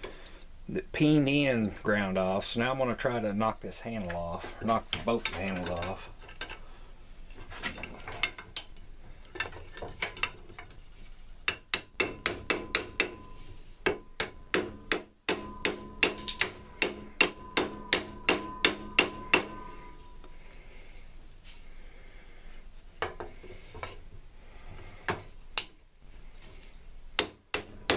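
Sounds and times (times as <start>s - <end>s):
hammer striking steel: 11.5s - 20.2s
steel ringing: 16.7s - 20.4s.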